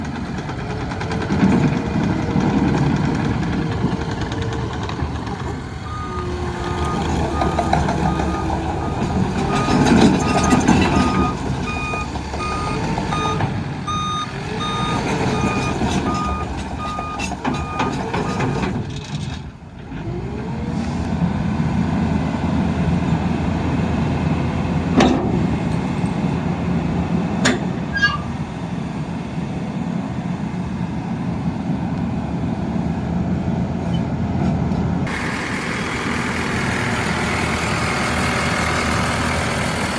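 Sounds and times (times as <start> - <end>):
diesel engine running: 0.0 - 39.9
backup alarm beeping: 5.8 - 18.4
sharp metal clanks: 27.4 - 28.4.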